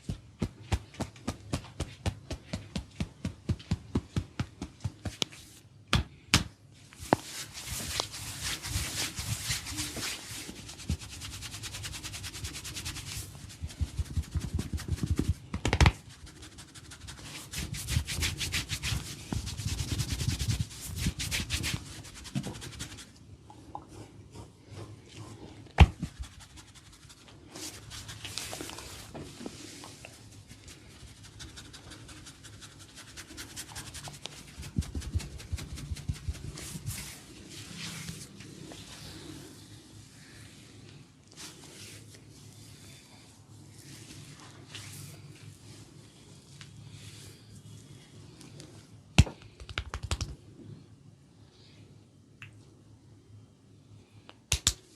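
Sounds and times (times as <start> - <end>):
hands scratching scalp and hair: 7.0 - 23.2, 25.9 - 29.8, 30.4 - 39.7.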